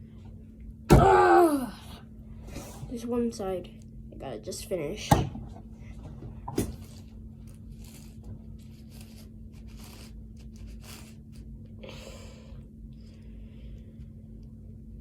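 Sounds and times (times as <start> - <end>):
puzzle cube turning scrapes: 6.8 - 11.5.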